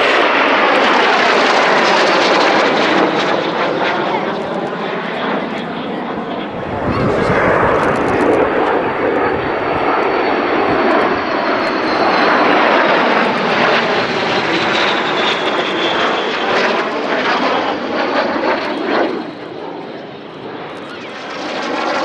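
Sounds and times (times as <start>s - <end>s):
aircraft engine flying past: 0.0s - 22.0s
high whine falling in pitch: 6.3s - 10.8s.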